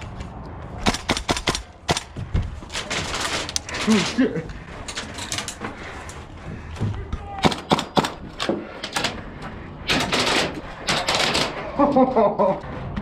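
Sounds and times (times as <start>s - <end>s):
airsoft gun shots: 7.4s - 8.2s.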